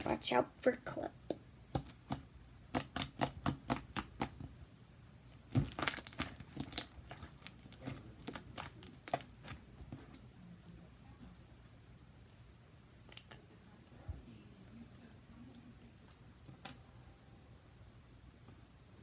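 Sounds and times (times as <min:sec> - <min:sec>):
slime squished with clicks and pops: 0:01.2 - 0:04.4.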